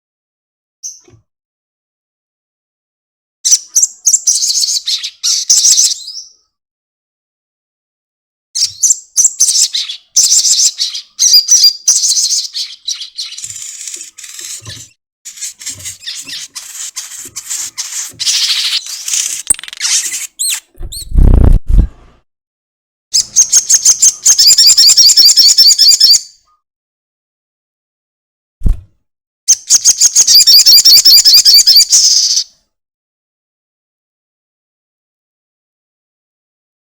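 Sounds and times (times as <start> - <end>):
bird trill: 3.5 - 6.6, 8.6 - 21.1, 23.2 - 26.6, 29.5 - 32.5
low thump: 20.8 - 22.2, 28.6 - 29.0.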